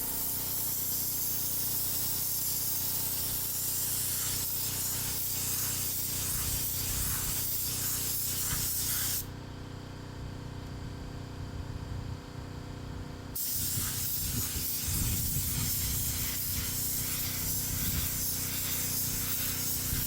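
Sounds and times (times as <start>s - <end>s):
paint spray gun hissing: 0.0s - 9.3s, 13.4s - 20.0s.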